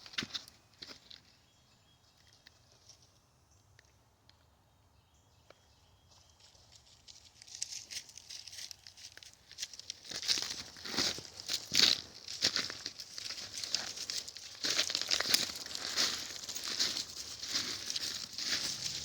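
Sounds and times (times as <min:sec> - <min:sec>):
footsteps crunching through dry leaves: 0:06.4 - 0:19.0.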